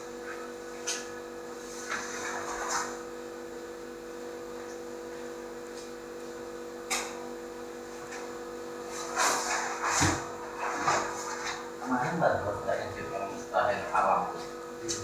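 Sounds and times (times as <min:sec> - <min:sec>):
machinery humming: 0:08.6 - 0:15.0.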